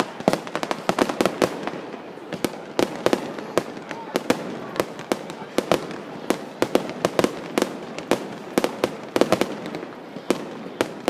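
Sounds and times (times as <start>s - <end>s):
fireworks bangs: 0.0s - 11.0s
fireworks crackle: 0.0s - 11.0s.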